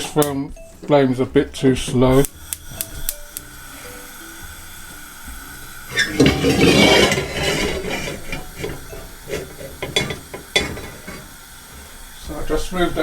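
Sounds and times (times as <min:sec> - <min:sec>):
gas burner hissing: 0:00.0 - 0:13.0
pot clanking on stove grate: 0:05.9 - 0:11.4.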